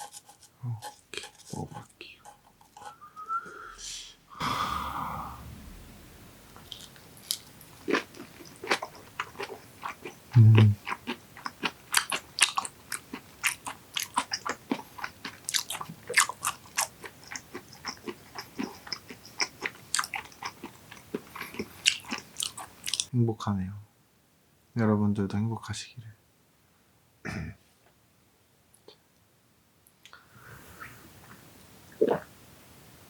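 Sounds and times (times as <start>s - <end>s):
short low hum: 4.6s - 6.6s
wet chewing and smacking: 6.6s - 23.1s.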